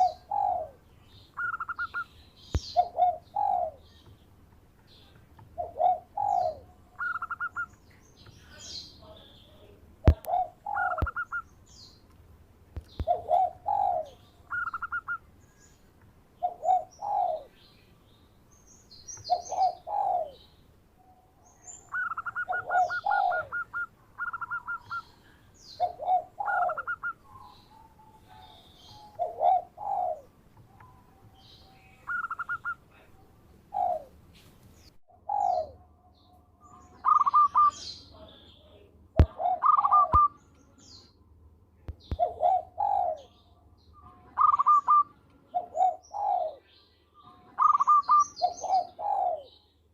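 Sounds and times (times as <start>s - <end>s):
dove cooing: 0.0s - 0.8s, 1.4s - 3.9s, 5.4s - 7.8s, 8.5s - 11.5s, 12.9s - 15.2s, 16.4s - 17.6s, 19.2s - 20.5s, 21.7s - 34.2s, 35.1s - 35.8s, 36.9s - 38.3s, 39.2s - 40.4s, 42.1s - 43.4s, 44.3s - 46.7s, 47.6s - 49.6s
small birds chirping: 0.0s - 49.9s.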